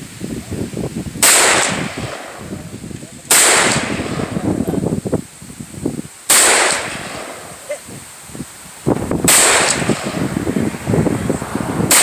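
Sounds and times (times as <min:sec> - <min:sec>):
gunshots: 0:01.2 - 0:02.5, 0:03.3 - 0:04.4, 0:06.3 - 0:07.6, 0:09.2 - 0:10.2.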